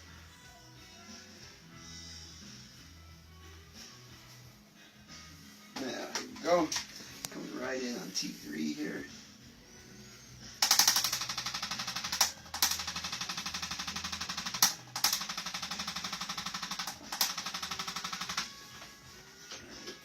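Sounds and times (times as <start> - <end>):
adjusting instrument rapid clicking: 10.6 - 18.5.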